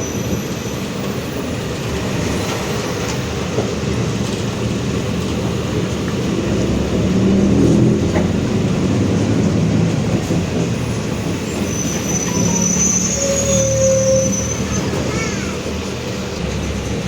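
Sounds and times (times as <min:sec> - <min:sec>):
bus diesel engine running: 0:00.0 - 0:17.0
growl of noisy differential: 0:05.8 - 0:11.2.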